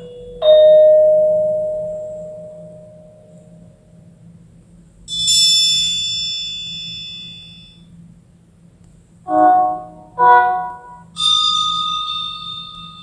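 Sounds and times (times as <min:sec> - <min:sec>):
lower-pitched tone: 0:09.3 - 0:11.2
slowed bell-like chime: 0:09.3 - 0:13.0.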